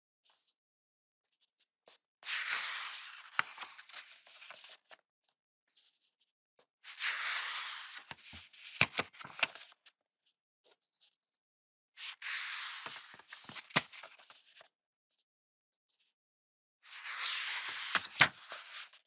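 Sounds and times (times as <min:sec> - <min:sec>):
book pages turning: 0:02.3 - 0:05.0, 0:07.0 - 0:09.9, 0:12.1 - 0:14.7, 0:17.0 - 0:19.0.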